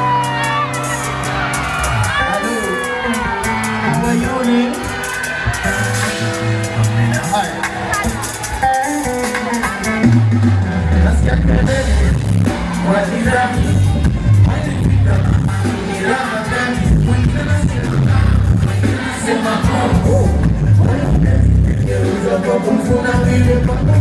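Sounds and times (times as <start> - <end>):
heavy bass beat: 0.0 - 24.0
person singing: 10.7 - 24.0.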